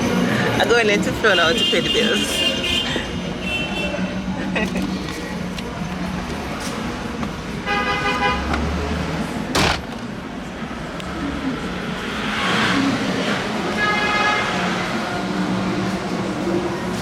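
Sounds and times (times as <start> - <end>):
traffic noise: 0.0 - 17.0
car horn: 1.3 - 4.2, 7.6 - 9.0, 13.6 - 15.1
sharp bang: 9.5 - 10.0.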